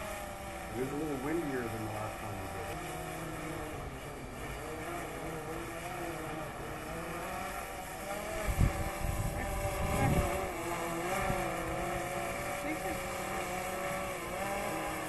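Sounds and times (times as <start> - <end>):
drone propellers whining: 0.0 - 15.0
wind buffeting microphone: 0.5 - 12.4.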